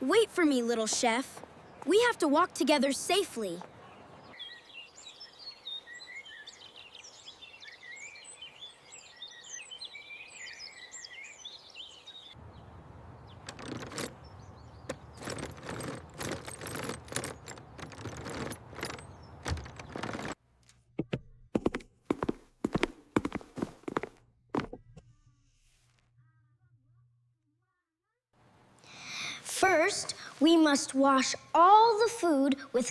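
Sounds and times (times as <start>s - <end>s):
birds chirping: 0.0s - 20.4s
quick clicks and knocks: 14.9s - 20.4s.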